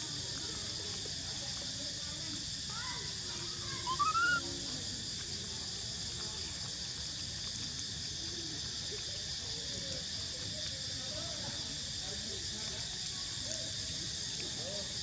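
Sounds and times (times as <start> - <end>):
insect hiss: 0.0 - 15.0
baby monkey crying: 3.8 - 4.4.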